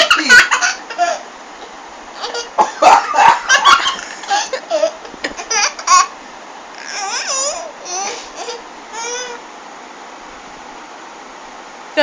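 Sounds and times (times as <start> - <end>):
baby laughing: 0.0 - 1.2, 2.2 - 6.2, 6.8 - 9.4.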